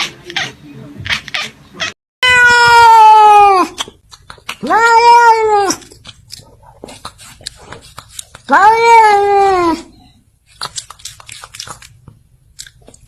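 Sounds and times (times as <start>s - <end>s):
cat meowing: 0.2s - 4.0s, 4.6s - 6.0s, 8.4s - 10.1s.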